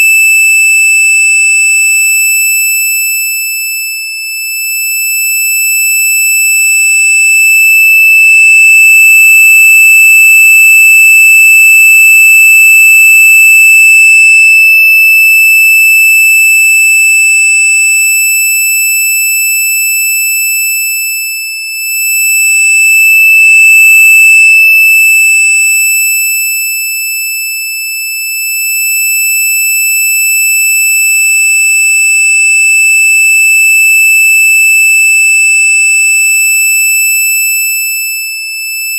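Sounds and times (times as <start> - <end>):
high-pitched electronic tone: 7.9 - 14.6, 23.3 - 24.6.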